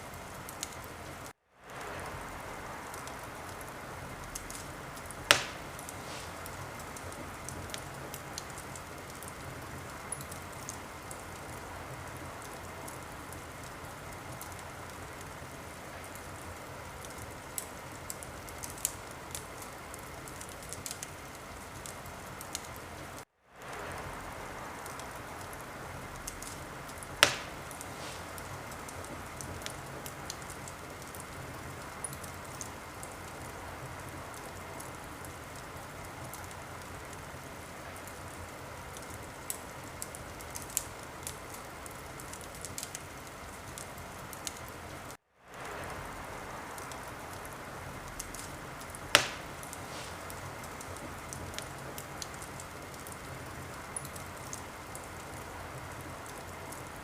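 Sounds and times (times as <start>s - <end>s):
wood fire hissing and crackling: 0.0s - 57.0s
loud fire pop: 5.3s - 6.5s, 27.2s - 28.4s, 49.1s - 50.2s.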